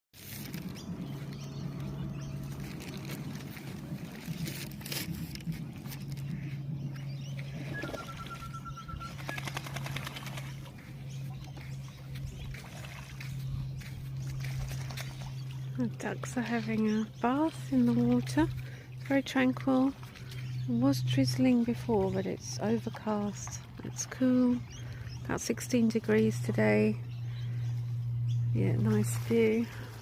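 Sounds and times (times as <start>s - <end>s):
ducks splashing in water: 0.2s - 25.6s
steady low hum: 0.2s - 30.0s
high bird notes: 5.8s - 12.6s.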